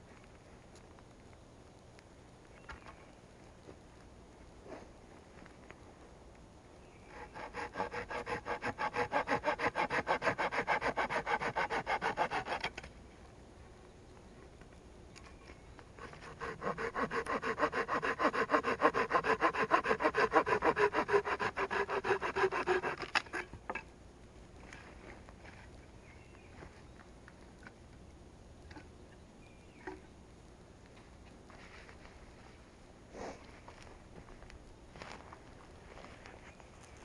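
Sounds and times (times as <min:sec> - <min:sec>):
hand saw cutting wood: 0:07.1 - 0:12.8, 0:16.0 - 0:23.5.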